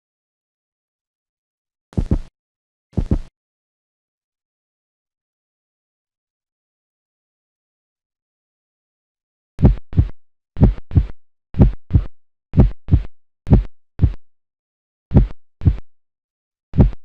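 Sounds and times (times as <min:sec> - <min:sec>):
heartbeat lub-dub: 0:02.0 - 0:02.3, 0:03.0 - 0:03.3, 0:09.6 - 0:14.2, 0:15.1 - 0:15.9, 0:16.8 - 0:17.0.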